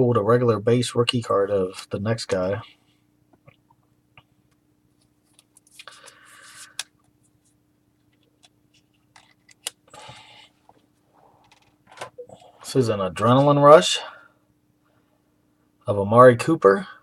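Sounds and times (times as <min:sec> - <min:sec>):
cards sliding rustle: 0:05.0 - 0:10.3.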